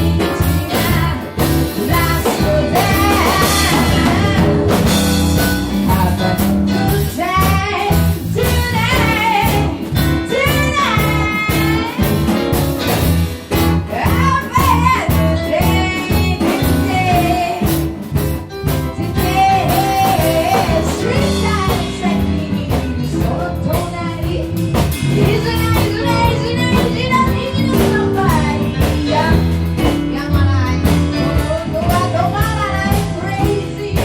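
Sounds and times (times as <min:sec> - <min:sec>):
wavering lead melody: 0:00.0 - 0:12.9
bass line: 0:00.0 - 0:34.0
drums: 0:00.0 - 0:34.0.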